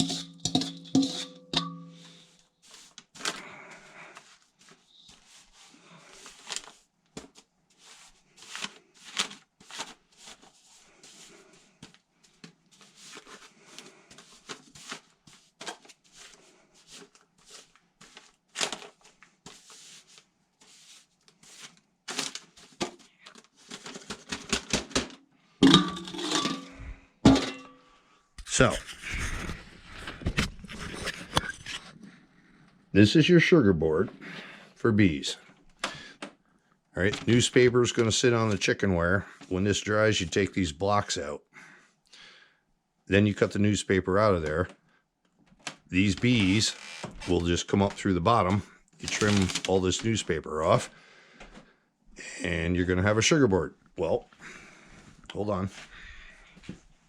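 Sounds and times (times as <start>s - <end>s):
utensil scraping sugar mixture: 0.0s - 3.3s.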